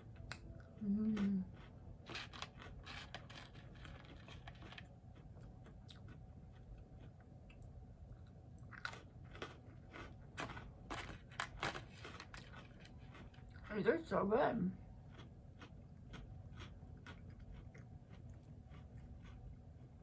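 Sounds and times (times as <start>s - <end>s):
food crunching: 0.0s - 13.7s, 15.0s - 20.0s
person chewing food: 0.0s - 13.7s, 15.0s - 20.0s.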